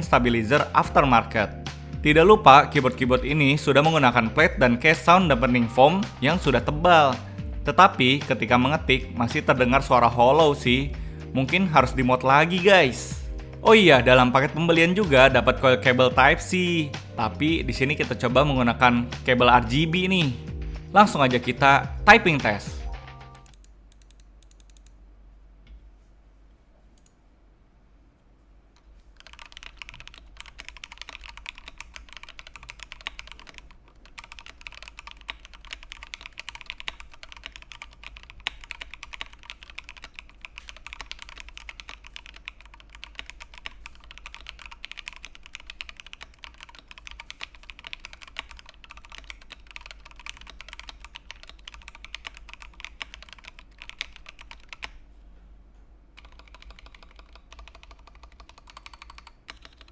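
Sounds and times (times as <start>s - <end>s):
fast mechanical keyboard typing: 2.2s - 10.8s, 23.4s - 24.9s, 29.2s - 55.0s, 56.2s - 59.9s.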